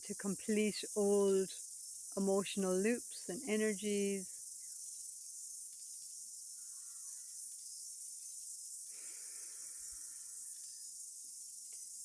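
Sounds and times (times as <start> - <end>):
crickets chirping: 0.0 - 12.0
soft breath: 8.9 - 10.6.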